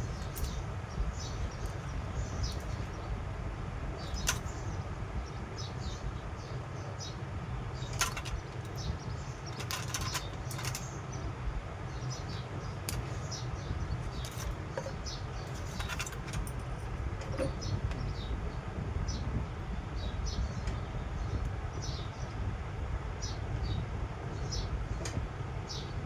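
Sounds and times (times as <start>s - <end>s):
sharp clicks and rattles: 0.0s - 3.0s, 4.0s - 4.7s, 7.8s - 11.0s, 12.9s - 17.6s.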